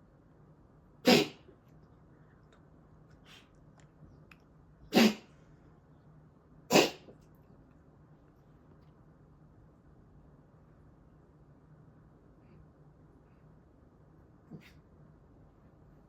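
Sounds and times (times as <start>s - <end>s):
pet sneezing: 1.0s - 1.5s, 4.9s - 5.4s, 6.7s - 7.2s.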